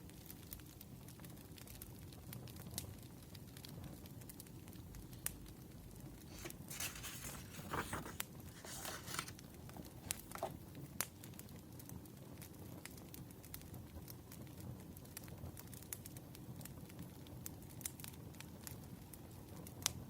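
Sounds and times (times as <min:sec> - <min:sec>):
wood fire crackling and popping: 0:00.0 - 0:06.8, 0:08.1 - 0:20.0
paper rustling and crinkling: 0:06.2 - 0:11.0.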